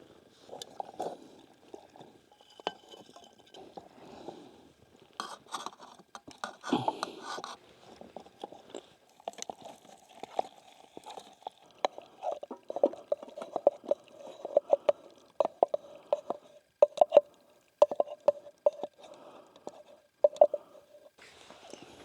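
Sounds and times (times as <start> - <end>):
spoon scraping a cooking pot: 1.8 - 3.9, 5.2 - 7.6, 11.8 - 22.0.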